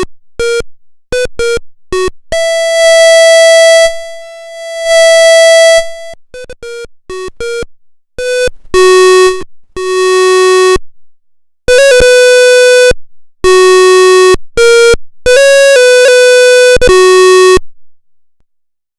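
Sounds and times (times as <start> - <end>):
buzzy electronic tone melody: 2.4 - 6.2.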